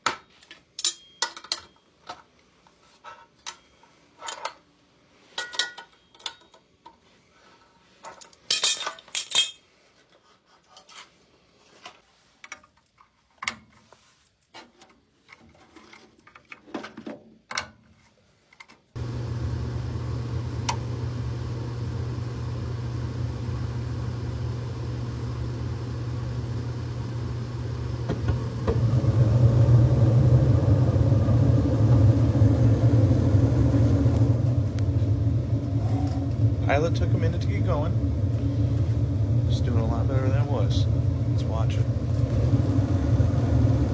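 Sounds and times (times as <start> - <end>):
tools and metal parts clinking: 0.0 - 2.3, 3.2 - 4.6, 5.4 - 7.0, 8.0 - 9.6
furnace hum: 0.0 - 16.5, 17.6 - 43.9
burners firing with low rumble: 19.0 - 43.9.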